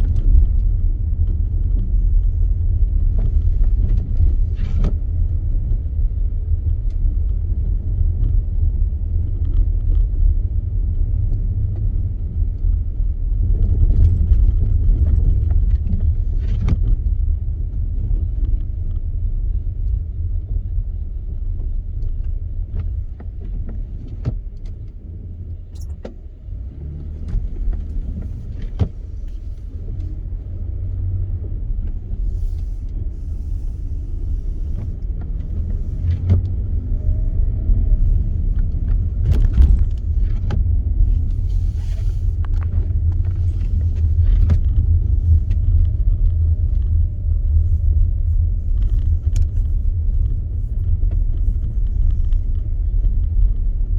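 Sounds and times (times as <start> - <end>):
car road and engine rumble: 0.0 - 53.9.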